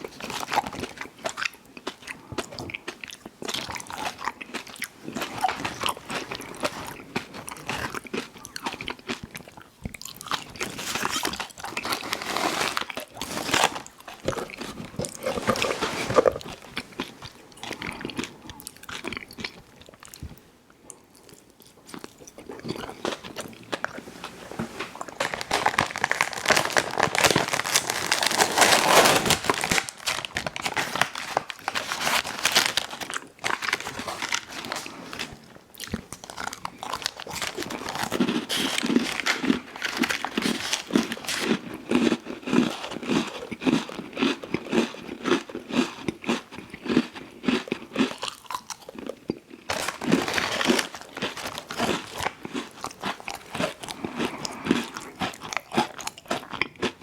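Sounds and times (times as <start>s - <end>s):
chewing: 12.8s - 26.4s, 33.0s - 57.0s
crunchy bites: 21.3s - 57.0s.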